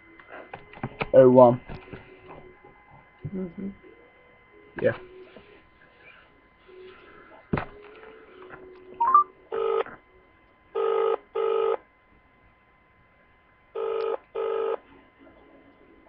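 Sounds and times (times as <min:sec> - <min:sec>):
telephone ringback tone: 0:07.8 - 0:09.9, 0:10.7 - 0:11.8, 0:13.8 - 0:14.8.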